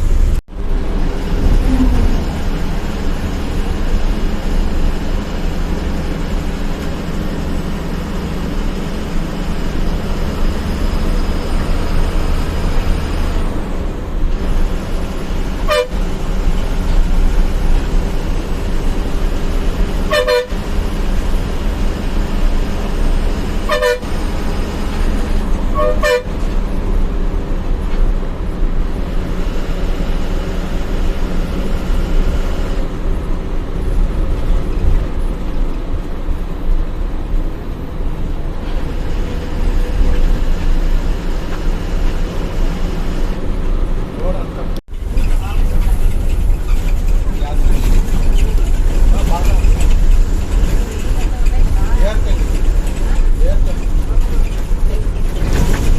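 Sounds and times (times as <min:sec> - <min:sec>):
bus engine rumble: 0:00.0 - 0:55.9
short horn toots: 0:15.6 - 0:16.0, 0:20.1 - 0:20.6, 0:23.7 - 0:24.2, 0:25.7 - 0:26.5.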